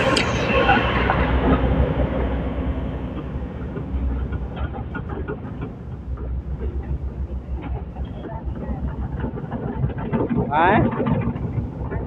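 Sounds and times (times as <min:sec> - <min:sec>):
excavator diesel engine rumble: 0:00.0 - 0:12.0.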